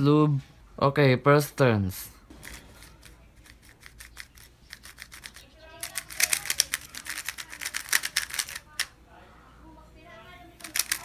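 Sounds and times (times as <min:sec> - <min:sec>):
puzzle cube plastic clicking: 0:02.4 - 0:08.9, 0:10.6 - 0:11.0.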